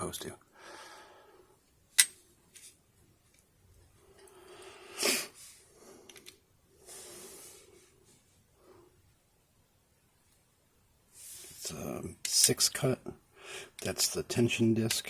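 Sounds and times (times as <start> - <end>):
person breathing out through nose: 4.3 - 6.1
sharp sniff: 4.7 - 5.7.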